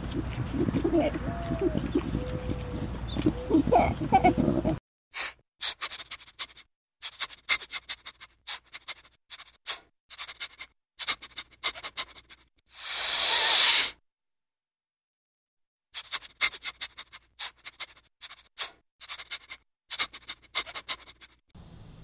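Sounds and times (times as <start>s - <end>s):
animal rapid clicks: 5.6s - 12.5s, 16.0s - 21.4s
animal hiss: 7.0s - 14.0s.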